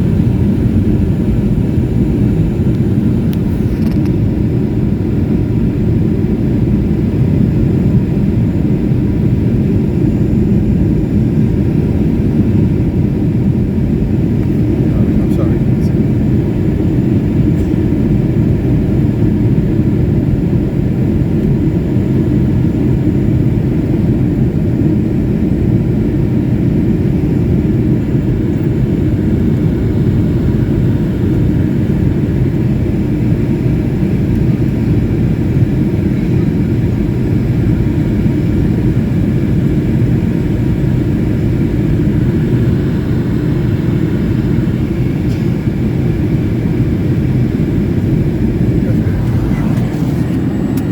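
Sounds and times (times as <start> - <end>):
jet engine rumble in cabin: 0.0 - 50.9.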